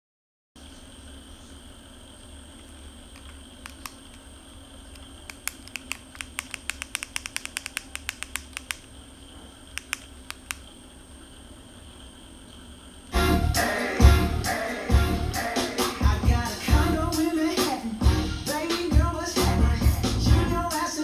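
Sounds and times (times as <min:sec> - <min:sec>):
high whine from speaker: 0:00.6 - 0:21.0
low hum from speaker: 0:00.6 - 0:21.0
sharp clicks: 0:03.1 - 0:04.2, 0:04.9 - 0:09.0, 0:09.7 - 0:10.7.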